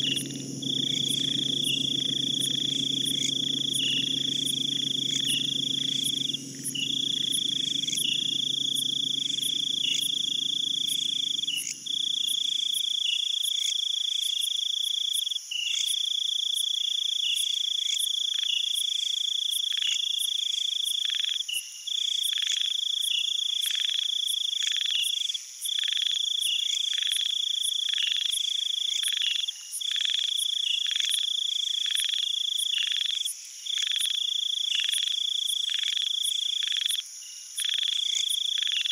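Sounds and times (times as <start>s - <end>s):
insect buzzing chorus: 0.0s - 12.4s
low hum: 0.0s - 12.4s.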